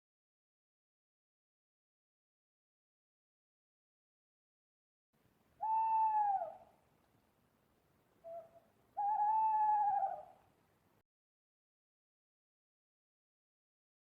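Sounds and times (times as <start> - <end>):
owl hooting: 5.6 - 6.8, 8.2 - 10.4.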